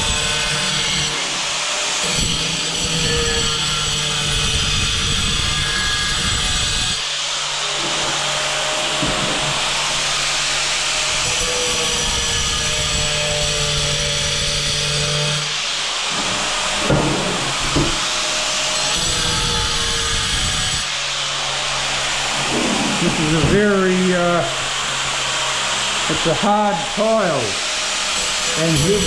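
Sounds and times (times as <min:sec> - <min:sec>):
angle grinder cutting tile: 0:00.0 - 0:29.0
knocks: 0:16.1 - 0:18.1.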